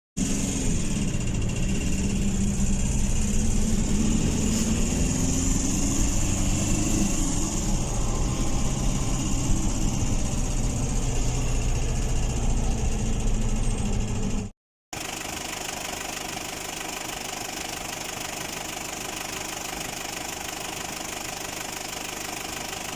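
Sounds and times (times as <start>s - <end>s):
diesel engine idling with knock: 0.2s - 4.0s, 9.1s - 22.9s.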